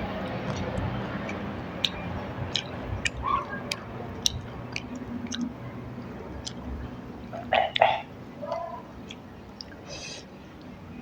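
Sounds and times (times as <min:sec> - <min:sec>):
person chewing food: 0:00.4 - 0:05.6, 0:06.4 - 0:06.7, 0:07.4 - 0:10.2
wet mouth clicks and smacks: 0:00.4 - 0:05.6, 0:06.4 - 0:06.7, 0:07.6 - 0:08.0, 0:09.1 - 0:09.8.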